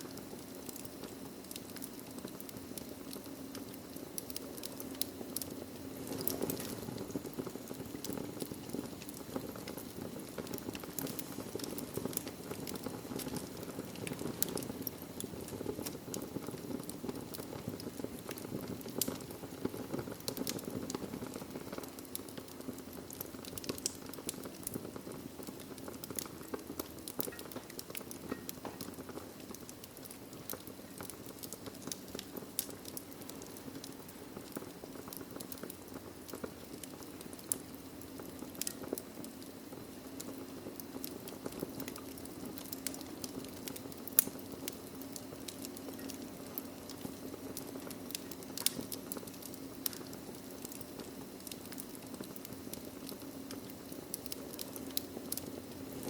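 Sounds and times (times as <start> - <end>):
wood fire crackling and popping: 0.0 - 56.0.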